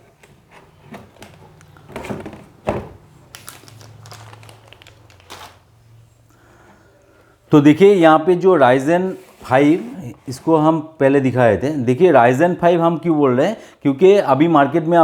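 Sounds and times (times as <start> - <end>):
packaging crinkling: 3.2 - 5.8.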